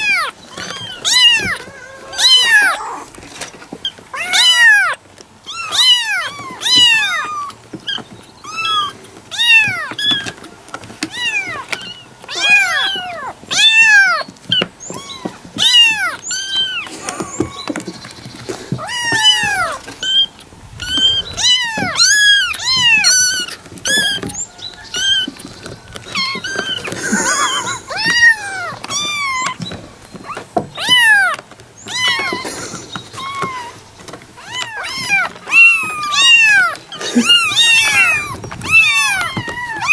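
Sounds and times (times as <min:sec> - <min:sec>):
kitten meowing: 0:00.0 - 0:03.1, 0:04.1 - 0:07.6, 0:08.4 - 0:10.4, 0:11.0 - 0:14.2, 0:14.9 - 0:17.6, 0:18.8 - 0:24.3, 0:26.1 - 0:29.7, 0:30.3 - 0:32.5, 0:34.4 - 0:39.9.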